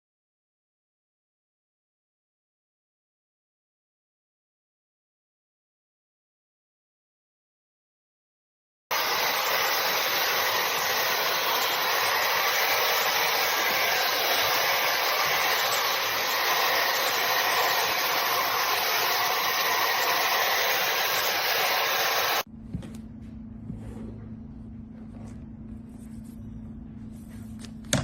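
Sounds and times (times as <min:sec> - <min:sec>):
hair dryer blowing air: 0:08.9 - 0:22.5.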